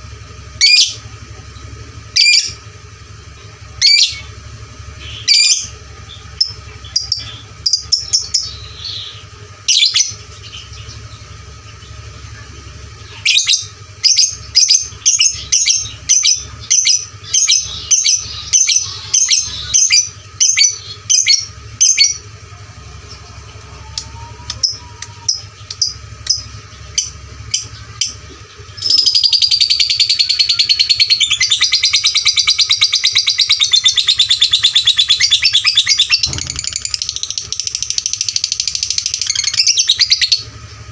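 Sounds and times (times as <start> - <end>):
lovebird chirping and chattering: 3.4 - 22.3, 23.0 - 40.5.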